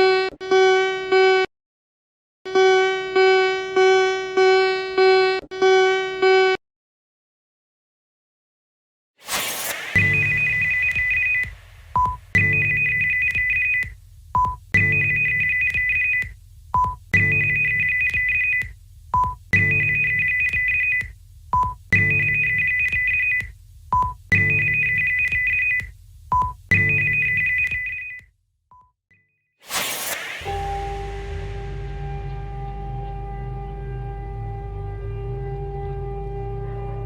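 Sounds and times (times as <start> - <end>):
low buzz: 9.3 - 13.0, 29.7 - 36.8
short lower blip: 9.3 - 16.3
two-pitch electronic alert beep: 9.3 - 28.2.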